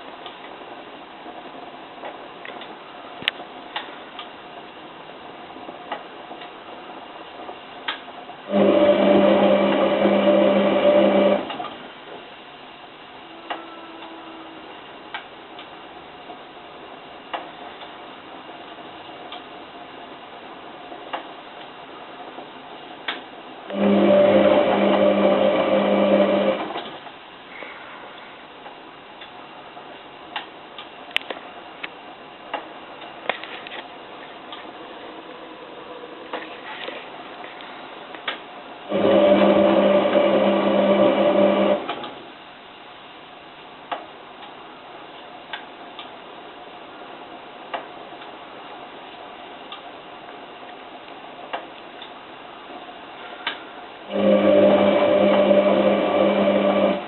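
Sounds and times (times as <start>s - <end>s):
washing machine drum motor hum: 0.0s - 13.6s, 20.5s - 27.2s, 33.9s - 42.6s, 53.9s - 57.0s
washing machine drum motor humming: 8.4s - 12.3s, 23.7s - 27.0s, 38.8s - 42.3s, 54.0s - 57.0s.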